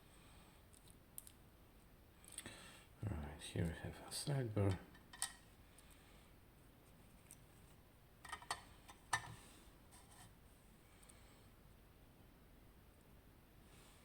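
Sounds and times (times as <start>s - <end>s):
small metal lock parts clicking: 4.7s - 5.4s.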